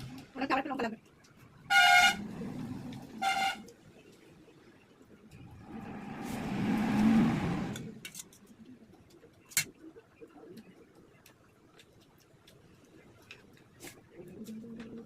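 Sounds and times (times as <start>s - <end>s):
vehicle horn honking: 1.7s - 2.2s, 3.2s - 3.7s
vehicle passing by: 5.6s - 8.0s.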